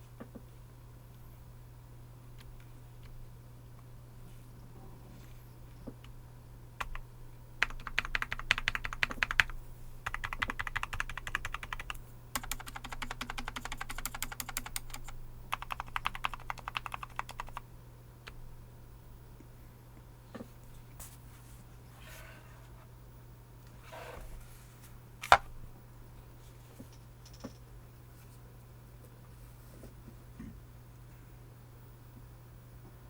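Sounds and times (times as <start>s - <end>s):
fast typing on keyboard: 7.6s - 17.6s.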